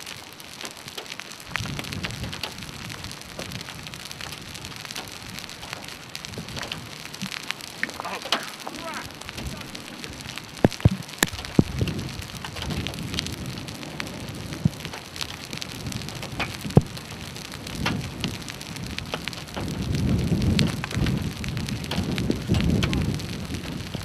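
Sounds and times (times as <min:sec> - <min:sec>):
hailstones ticking: 0:00.0 - 0:24.0
rain pattering: 0:00.0 - 0:24.0
low rumble: 0:07.7 - 0:19.1.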